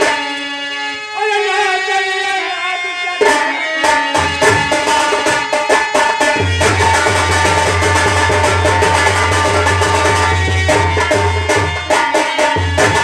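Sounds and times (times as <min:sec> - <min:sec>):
lively folk instrumental music: 0:00.0 - 0:13.0
fast hand-drum strokes: 0:03.2 - 0:13.0.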